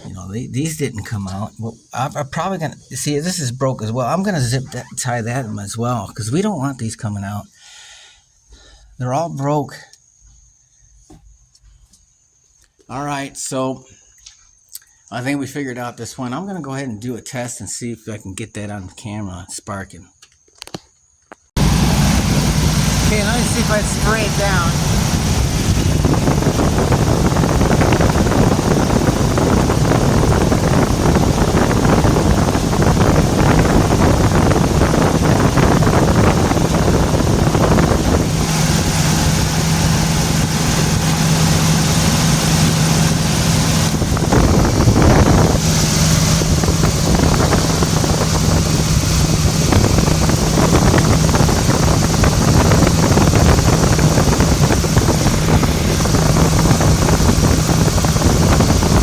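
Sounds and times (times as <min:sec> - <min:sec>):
rough engine idling: 0:21.6 - 0:59.0.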